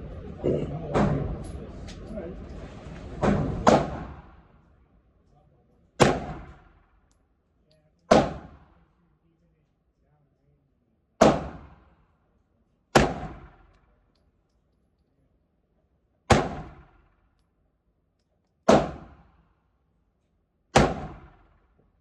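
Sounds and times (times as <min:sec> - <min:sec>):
pistol shots with echo: 0:03.2 - 0:04.4, 0:06.0 - 0:06.9, 0:08.1 - 0:08.8, 0:11.2 - 0:12.0, 0:12.9 - 0:13.8, 0:16.3 - 0:17.2, 0:18.6 - 0:19.4, 0:20.7 - 0:21.7.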